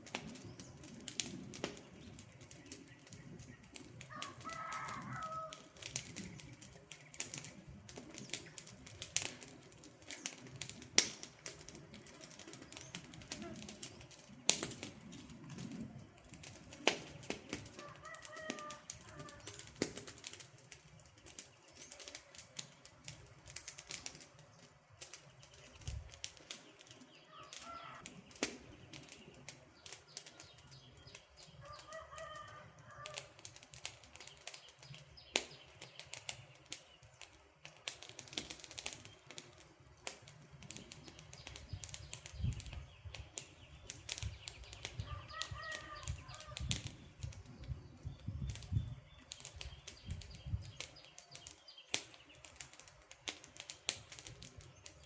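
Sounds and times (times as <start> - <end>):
campfire crackling and popping: 0.0 - 55.0
bird calling: 27.2 - 28.1, 44.5 - 46.7.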